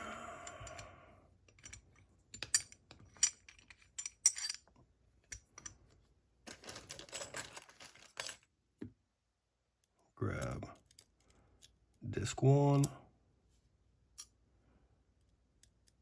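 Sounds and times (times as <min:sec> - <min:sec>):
metal lock parts clicking: 0:01.5 - 0:05.8.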